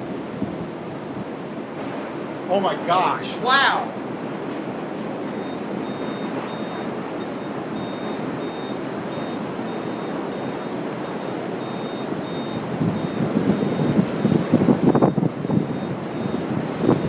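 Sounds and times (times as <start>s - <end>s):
strong wind rushing past microphone: 0.0s - 3.1s, 3.9s - 17.0s.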